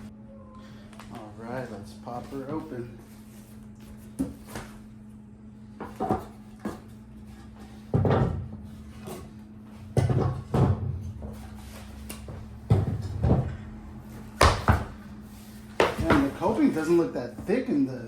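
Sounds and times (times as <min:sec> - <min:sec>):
shipping box knocks and thuds: 0:12.6 - 0:13.5, 0:14.4 - 0:15.0.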